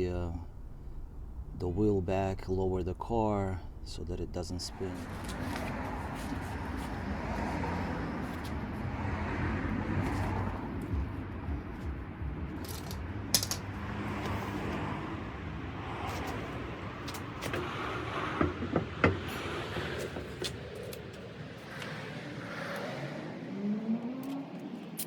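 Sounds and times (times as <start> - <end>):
steady low hum: 0.0 - 17.4.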